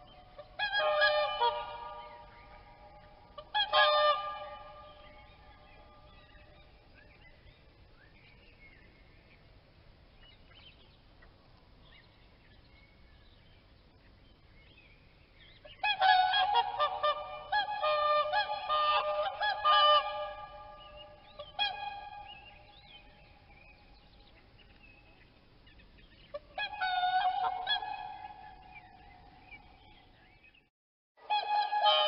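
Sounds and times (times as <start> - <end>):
swans honking: 0.0 - 6.8, 15.7 - 24.4, 26.1 - 30.0, 31.2 - 32.0.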